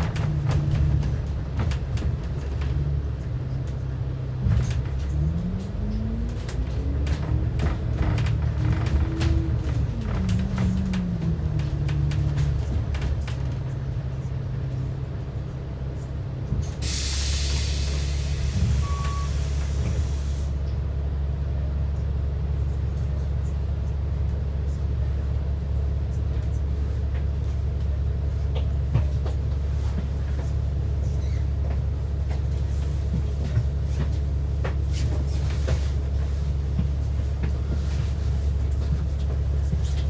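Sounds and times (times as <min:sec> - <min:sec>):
bus engine and road rumble: 0:00.0 - 0:40.0
hiss: 0:16.8 - 0:20.5.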